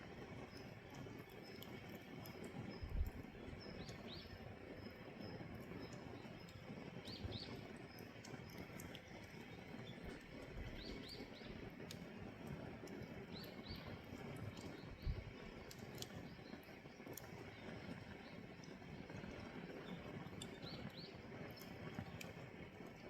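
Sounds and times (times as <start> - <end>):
fire burning with crackles: 0.0 - 23.0.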